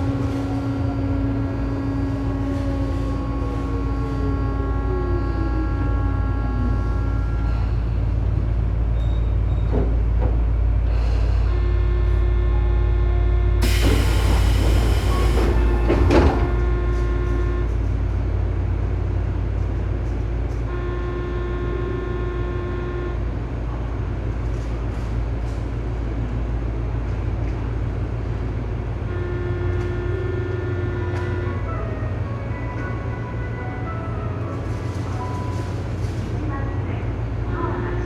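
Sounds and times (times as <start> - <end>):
train rumble: 0.0 - 38.0
multi-tone chopper whine: 11.7 - 17.8.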